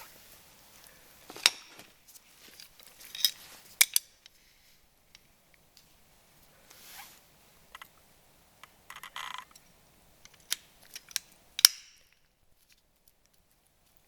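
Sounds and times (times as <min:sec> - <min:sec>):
metal tools rattling: 0:02.9 - 0:04.1.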